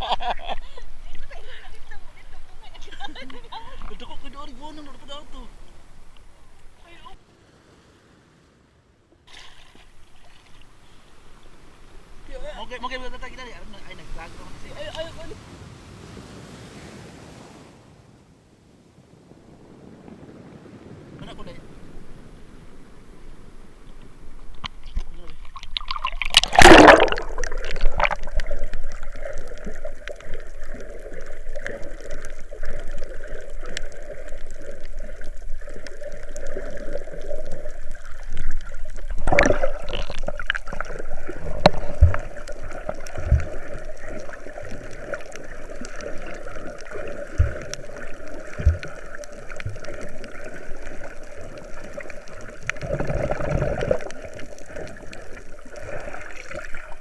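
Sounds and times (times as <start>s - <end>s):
sea water sloshing: 0.0s - 17.7s, 19.6s - 57.0s.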